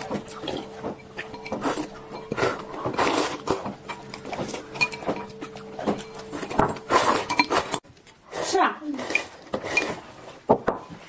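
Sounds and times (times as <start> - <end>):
spoon clinking in bowl: 0.0 - 7.8
faint steady hum: 0.0 - 8.2.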